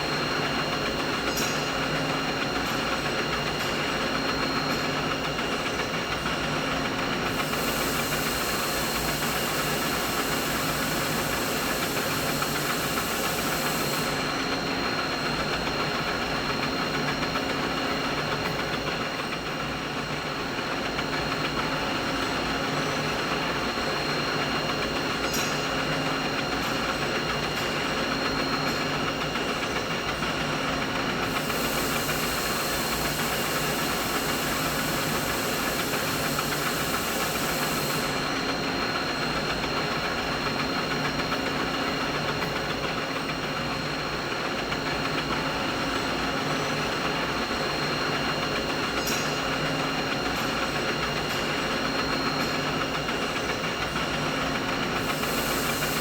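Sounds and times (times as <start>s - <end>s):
high hissing: 7.3s - 14.2s, 31.3s - 38.2s, 55.0s - 56.0s
machine hum: 7.3s - 15.0s, 55.0s - 56.0s.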